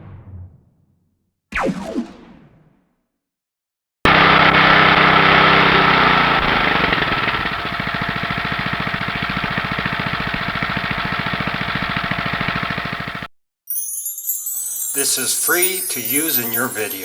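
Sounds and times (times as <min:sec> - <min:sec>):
motor chugging: 0:04.1 - 0:13.3.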